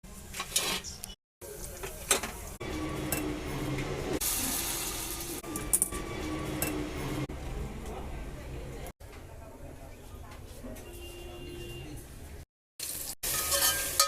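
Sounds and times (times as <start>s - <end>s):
dishes and utensils clinking: 13.2s - 14.0s.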